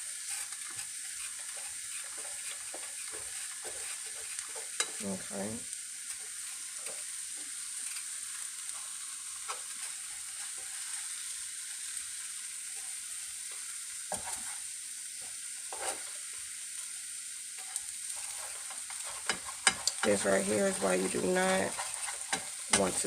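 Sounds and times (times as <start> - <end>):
omelette sizzling in a frying pan: 0.0 - 23.0.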